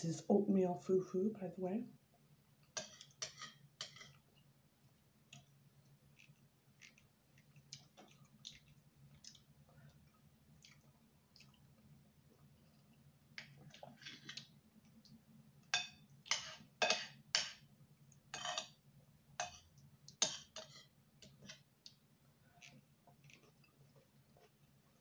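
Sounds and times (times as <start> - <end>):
wet chewing mouth sounds: 6.1 - 11.7.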